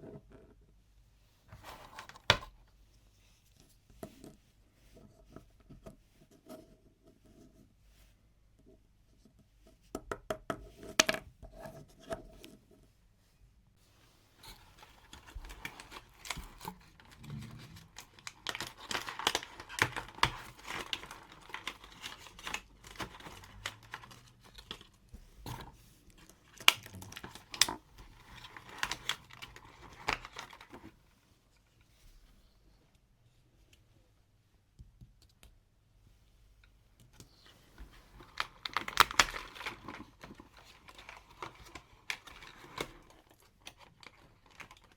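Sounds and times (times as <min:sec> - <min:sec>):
packaging tearing and crinkling: 0:15.0 - 0:24.9, 0:26.4 - 0:30.8, 0:38.2 - 0:44.9.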